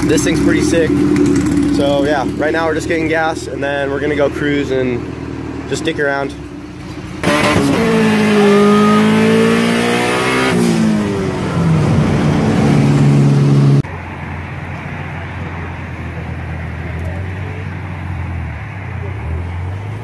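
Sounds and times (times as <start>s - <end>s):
car engine accelerating hard: 0.0s - 20.0s.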